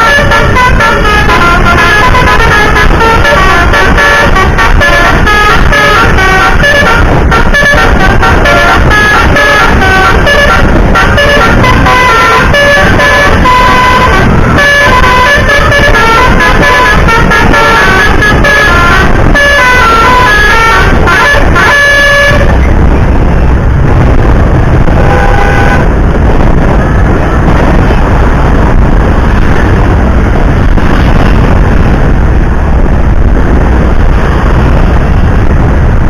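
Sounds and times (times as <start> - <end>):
multi-trumpet bus horn playing tune: 0.0 - 23.3, 24.8 - 26.1
low rumble: 0.0 - 36.0.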